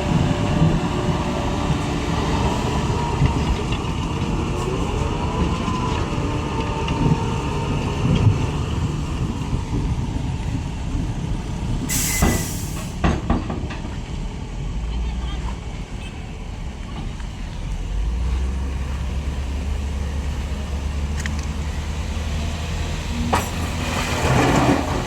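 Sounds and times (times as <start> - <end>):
heavy diesel machinery running: 0.0 - 25.0
air hiss burst: 11.9 - 13.0.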